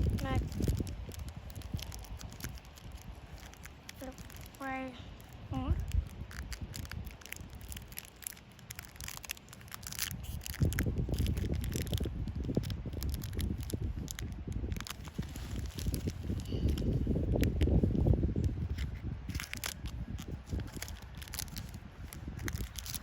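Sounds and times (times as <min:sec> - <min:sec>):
low handling rumble: 0:00.0 - 0:09.8
foil wrapper crinkling and tearing: 0:00.0 - 0:23.0.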